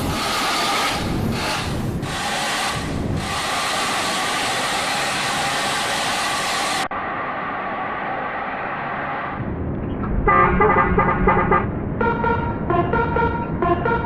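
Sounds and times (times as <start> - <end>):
hiss: 0.0 - 6.9
road traffic noise: 0.0 - 14.0.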